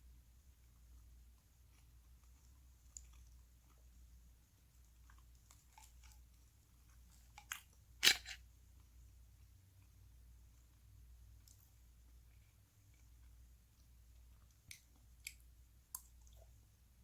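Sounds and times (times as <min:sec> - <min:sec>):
chewing and mouth clicks: 0:00.6 - 0:04.1, 0:04.7 - 0:07.8, 0:11.3 - 0:16.6
sharp food crunch: 0:08.0 - 0:08.4.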